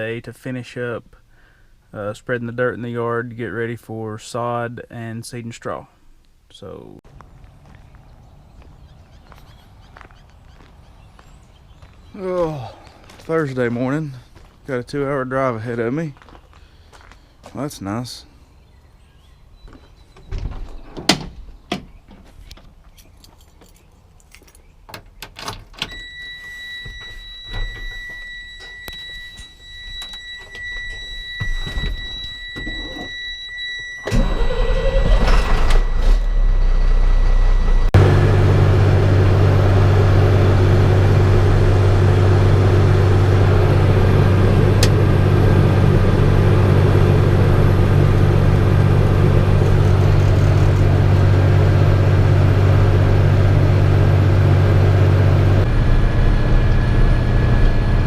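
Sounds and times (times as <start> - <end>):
keys jingling: 22.9 - 24.8
high warning chime: 25.8 - 37.9
truck engine cranking and idling: 27.0 - 58.0.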